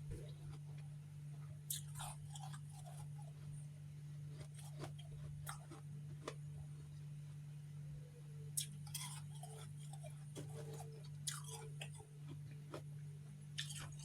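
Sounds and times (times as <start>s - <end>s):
frost chunks crunching: 4.3s - 6.4s.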